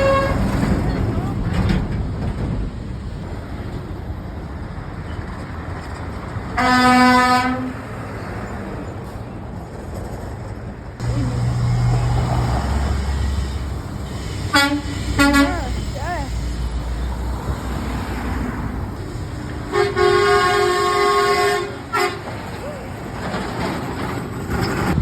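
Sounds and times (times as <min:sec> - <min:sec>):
truck air horn blast: 0:00.0 - 0:00.6, 0:06.6 - 0:07.9, 0:11.0 - 0:16.7, 0:19.6 - 0:22.4
heavy engine low rumble: 0:00.0 - 0:08.0, 0:08.6 - 0:25.0
street traffic: 0:00.0 - 0:25.0.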